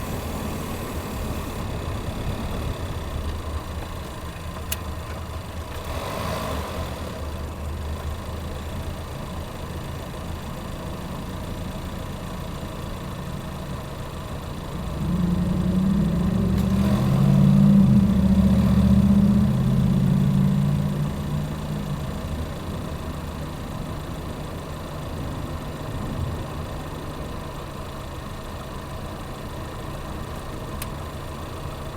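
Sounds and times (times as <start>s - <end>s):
car engine low rumble: 0.0s - 31.9s
low humming drone: 14.7s - 27.4s.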